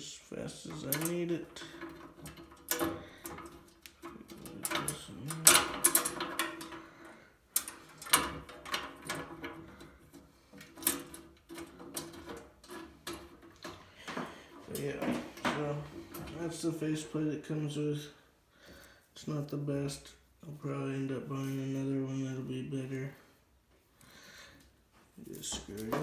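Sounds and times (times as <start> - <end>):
metal parts clicking and knocking: 0.7 - 14.2.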